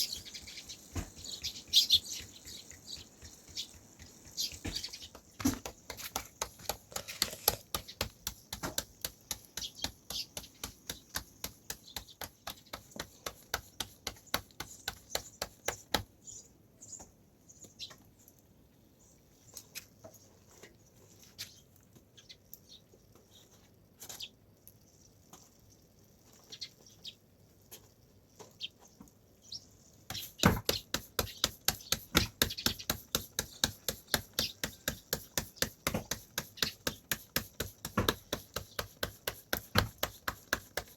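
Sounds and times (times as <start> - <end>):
rapid sharp knocks: 1.8 - 16.1, 30.1 - 40.9.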